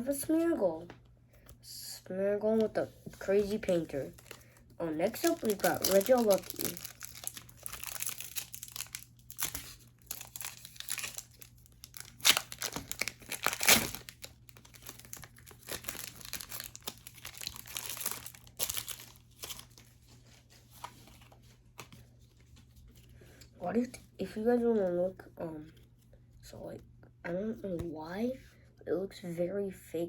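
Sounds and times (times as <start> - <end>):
plastic packaging crinkling: 3.2 - 22.0.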